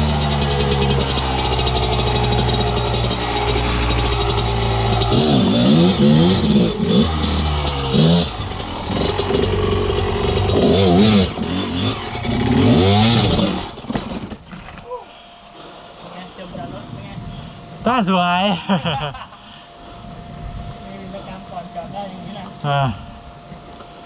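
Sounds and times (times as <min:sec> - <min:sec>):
dirt bike engine revving: 0:00.0 - 0:13.9.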